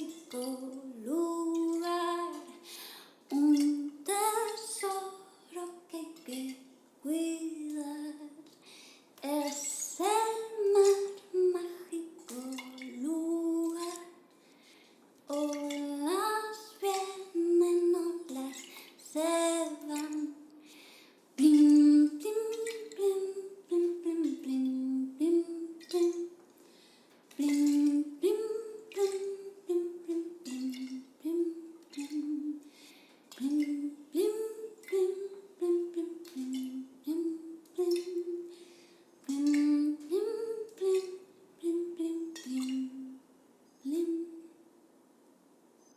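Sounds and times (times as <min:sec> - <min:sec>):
water drips and splashes: 0:03.3 - 0:05.1, 0:12.2 - 0:14.2, 0:15.3 - 0:17.6, 0:21.4 - 0:23.0, 0:27.3 - 0:32.4, 0:39.3 - 0:40.1
woman humming a slow melody: 0:27.4 - 0:32.6, 0:33.4 - 0:38.5, 0:39.3 - 0:43.2, 0:43.8 - 0:44.6.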